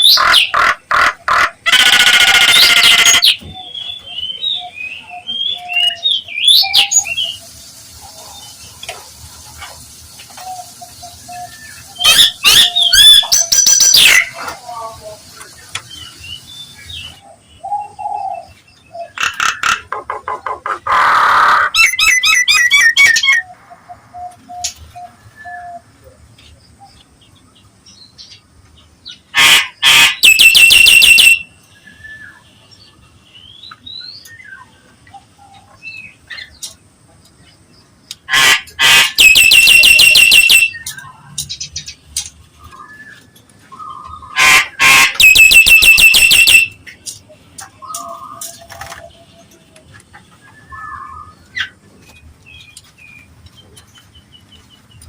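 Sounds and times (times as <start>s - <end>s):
myna calling shrill notes: 0.0s - 3.4s, 11.9s - 14.4s, 21.0s - 23.4s, 29.4s - 31.5s, 38.3s - 41.1s, 44.3s - 46.8s
soft whistles and slurred calls: 29.4s - 32.4s, 38.3s - 41.3s, 42.6s - 46.8s.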